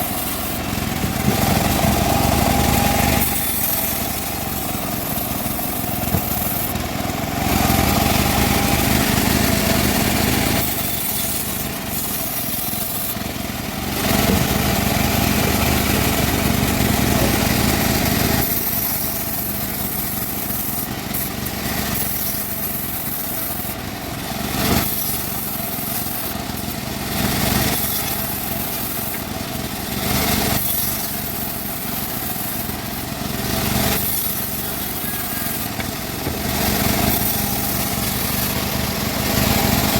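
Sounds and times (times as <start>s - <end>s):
bandsaw sawing wood: 0.0s - 39.9s.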